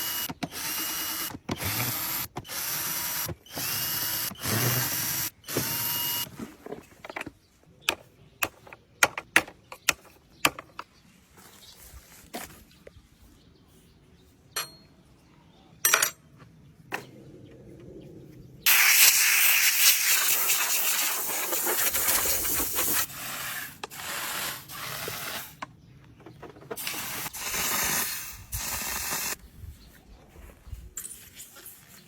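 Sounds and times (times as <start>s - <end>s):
gas hissing from spray nozzle: 18.7s - 25.5s, 26.8s - 29.4s.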